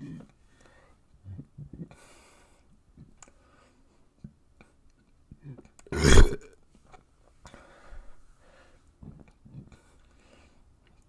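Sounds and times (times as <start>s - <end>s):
breath: 0.4s - 1.1s, 1.9s - 4.1s, 7.4s - 9.0s, 9.7s - 10.7s
loud short burp: 5.9s - 6.5s.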